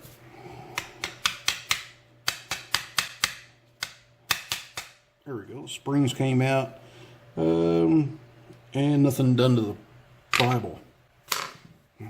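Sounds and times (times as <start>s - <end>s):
sharp metallic clicks and taps: 0.7s - 5.0s.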